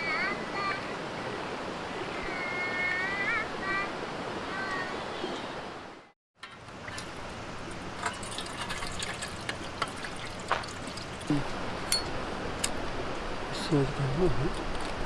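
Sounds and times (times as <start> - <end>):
water drips and splashes: 6.4 - 13.2.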